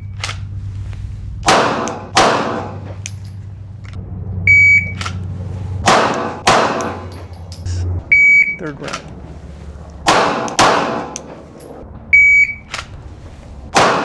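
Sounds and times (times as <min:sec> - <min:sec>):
pistol shots: 0:01.4 - 0:03.4, 0:05.8 - 0:09.2, 0:10.0 - 0:13.0, 0:13.7 - 0:14.0
shot timer beep: 0:04.5 - 0:05.0, 0:08.1 - 0:08.7.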